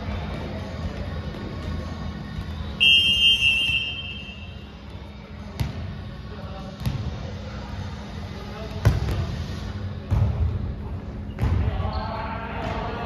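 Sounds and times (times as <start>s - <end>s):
referee's whistle blast: 2.8s - 4.6s.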